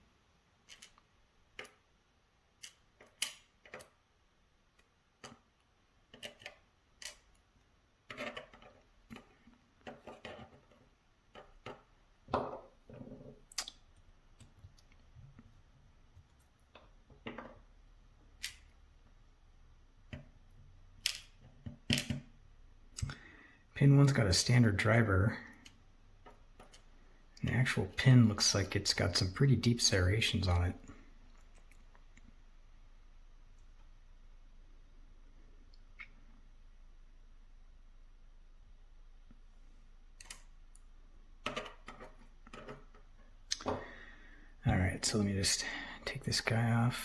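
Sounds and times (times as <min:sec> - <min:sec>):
small lock parts clicking: 0:00.6 - 0:01.8, 0:02.6 - 0:04.0, 0:06.1 - 0:07.4.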